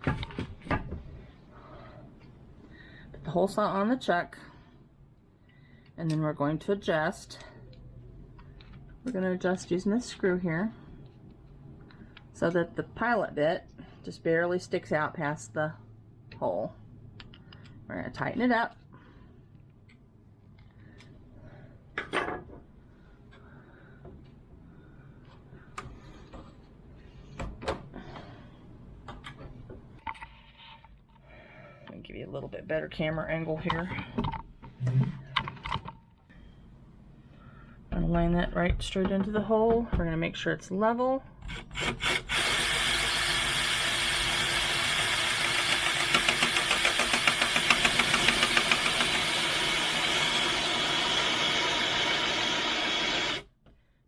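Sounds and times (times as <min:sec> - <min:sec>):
drill and hole saw clicks: 0:41.5 - 0:53.5.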